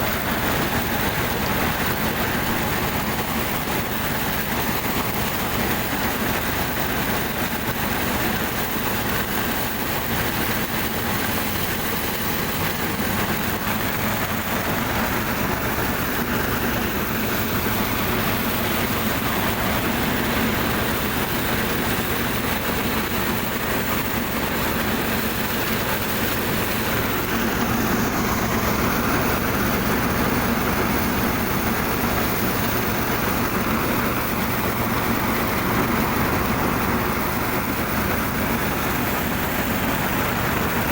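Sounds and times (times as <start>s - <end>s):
small engine running: 0.0s - 40.9s.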